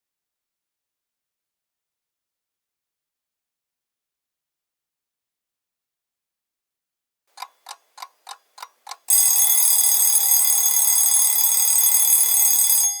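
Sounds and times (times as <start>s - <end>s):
clock ticking: 7.4s - 13.0s
alarm clock bell ringing: 9.1s - 13.0s.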